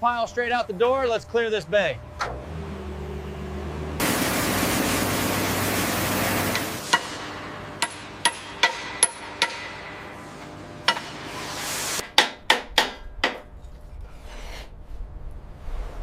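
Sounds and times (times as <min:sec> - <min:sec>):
hammer blows: 0:06.5 - 0:13.5.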